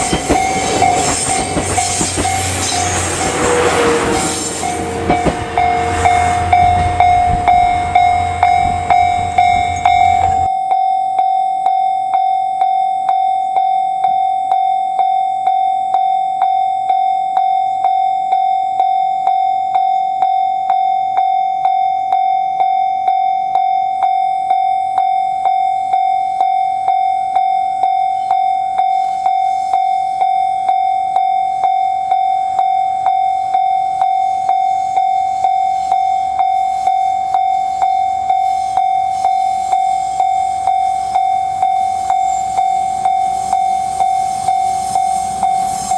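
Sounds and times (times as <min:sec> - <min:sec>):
rushing noise: 0:00.0 - 0:10.5
level crossing warning bell: 0:00.0 - 0:45.9.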